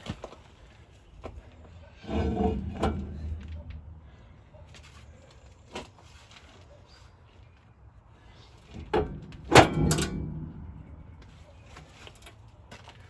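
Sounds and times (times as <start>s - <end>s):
metal scrape: 1.9s - 4.6s, 8.8s - 12.1s
loud ringing metallic clank: 2.1s - 4.2s, 9.0s - 11.3s.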